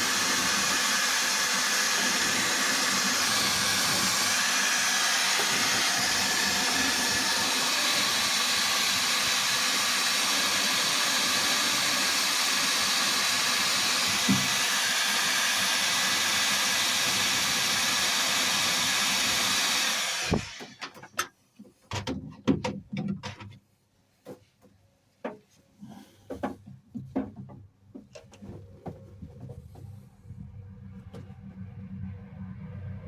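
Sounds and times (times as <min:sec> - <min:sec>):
heat gun hissing: 0:00.0 - 0:20.6
clicks and knocks: 0:20.8 - 0:23.6.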